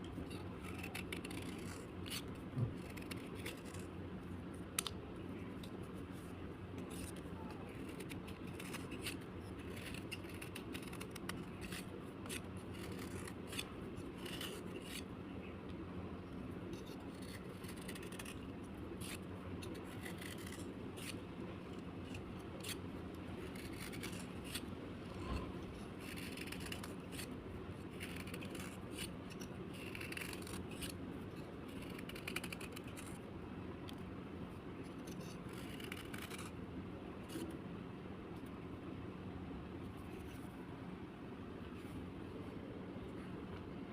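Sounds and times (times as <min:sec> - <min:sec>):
steady low hum: 0:00.0 - 0:43.9
slate scraping strokes: 0:23.5 - 0:27.3.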